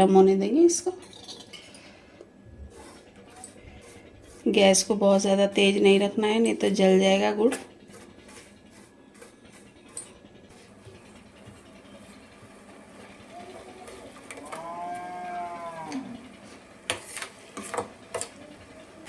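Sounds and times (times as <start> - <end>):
drawn-out animal call: 10.4 - 16.7.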